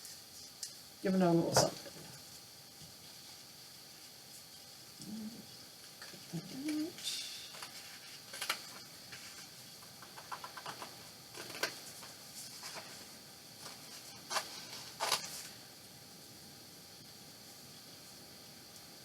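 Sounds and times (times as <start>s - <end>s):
paper rustling: 7.5s - 15.6s.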